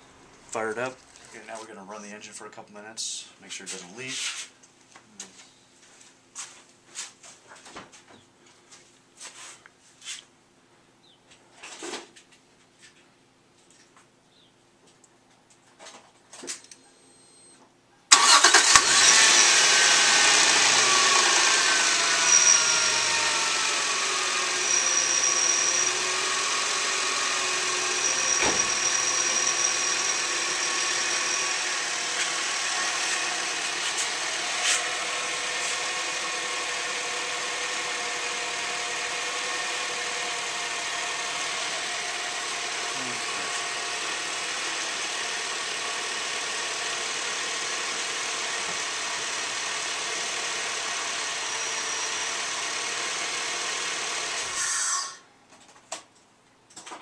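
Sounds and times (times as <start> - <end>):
car engine starting and idling: 18.1 - 54.6.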